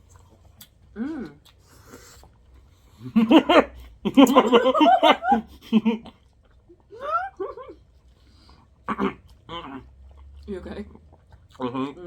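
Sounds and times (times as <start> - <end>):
person laughing: 3.0 - 6.1.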